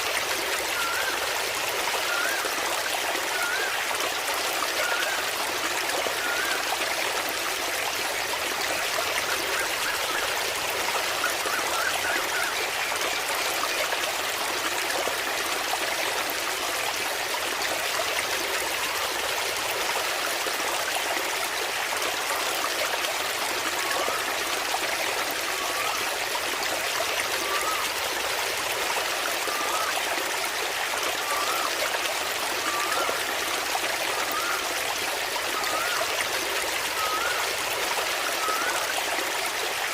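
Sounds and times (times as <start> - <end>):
small waterfall splashing: 0.0 - 39.9.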